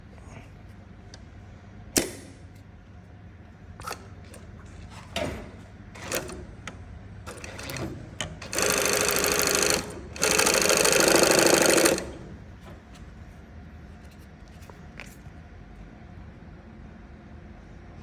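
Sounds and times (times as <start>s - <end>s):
sewing machine stitching: 5.2s - 6.5s, 7.3s - 12.4s.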